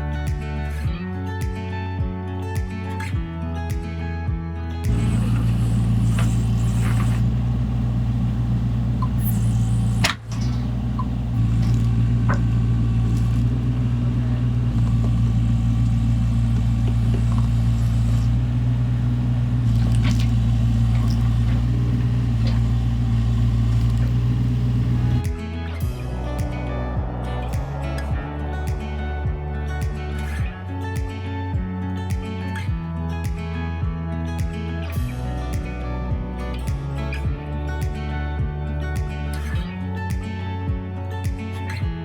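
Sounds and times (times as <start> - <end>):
engine running steadily: 4.9 - 26.0.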